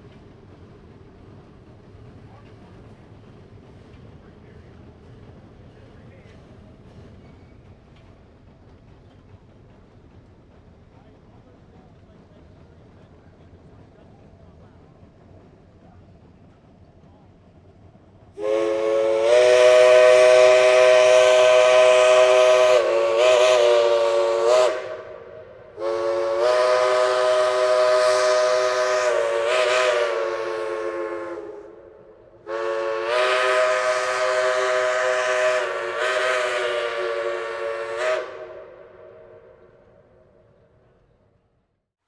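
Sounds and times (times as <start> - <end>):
steam locomotive chime whistle: 18.4 - 39.4.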